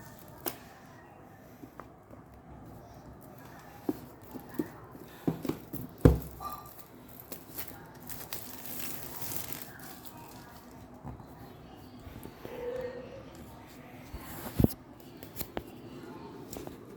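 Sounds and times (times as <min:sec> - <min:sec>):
packaging rustling and crinkling: 0:03.2 - 0:11.0.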